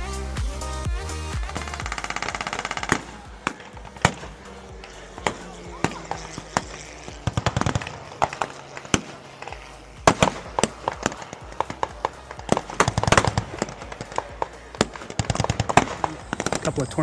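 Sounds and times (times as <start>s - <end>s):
sharp irregular pops and clicks: 1.3s - 17.0s.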